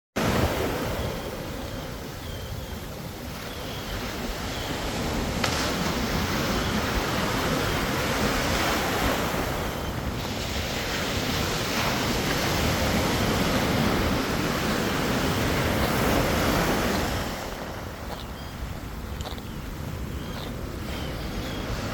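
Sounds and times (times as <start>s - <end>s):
ocean surf breaking: 0.2s - 1.8s, 3.0s - 18.2s
wind buffeting microphone: 0.2s - 21.9s.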